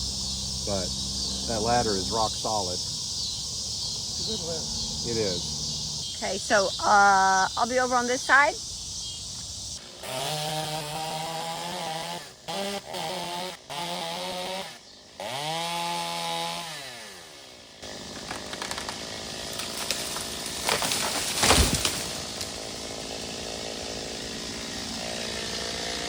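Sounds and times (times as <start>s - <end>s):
chainsaw running: 0.0s - 3.0s, 9.8s - 26.0s
wood cracking: 17.8s - 23.6s.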